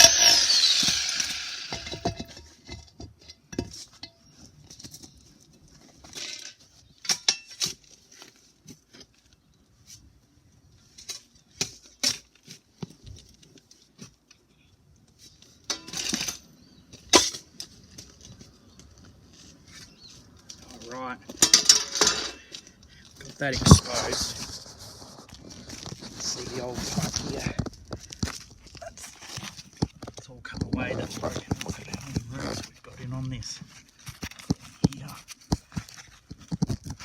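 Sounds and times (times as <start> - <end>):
tool scraping: 0.0 - 2.6
digging in soil and concrete: 0.0 - 37.0.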